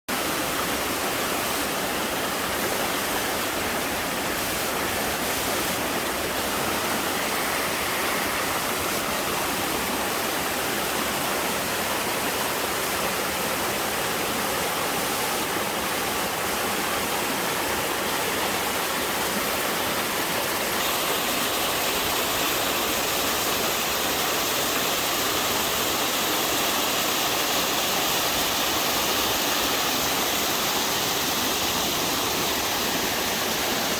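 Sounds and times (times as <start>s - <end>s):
waterfall rushing: 0.1s - 33.9s.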